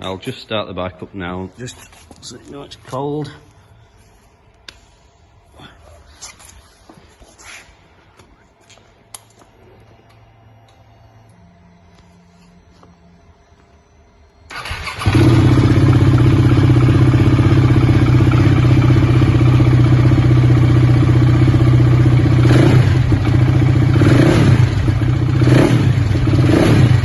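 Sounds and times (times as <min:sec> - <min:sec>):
motorcycle engine idling and revving: 0:14.5 - 0:27.0.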